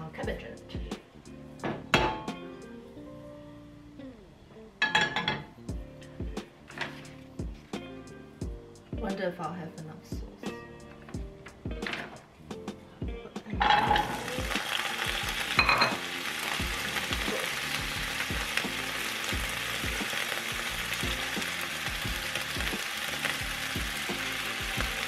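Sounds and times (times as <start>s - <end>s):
faint background music: 0.0s - 25.0s
food sizzling in a pan: 13.6s - 25.0s.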